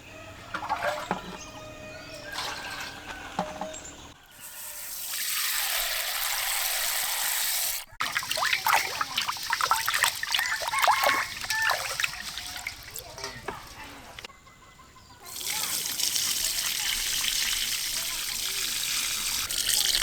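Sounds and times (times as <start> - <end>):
water splashing and trickling: 0.0 - 14.3, 15.2 - 20.0
water pouring steadily: 4.8 - 13.8, 15.3 - 20.0.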